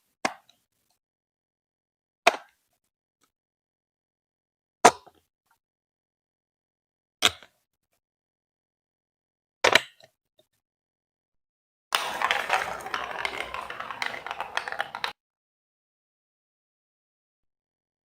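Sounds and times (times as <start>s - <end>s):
marble clacking on plastic bricks: 12.0s - 15.2s
marbles rolling on plastic track: 12.0s - 15.2s.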